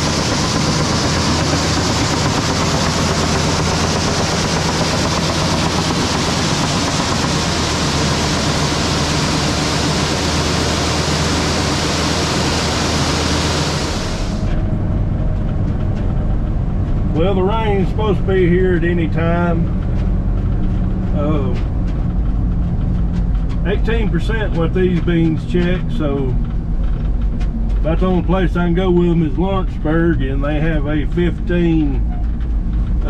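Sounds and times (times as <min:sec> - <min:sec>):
deep engine drone: 0:00.0 - 0:33.0.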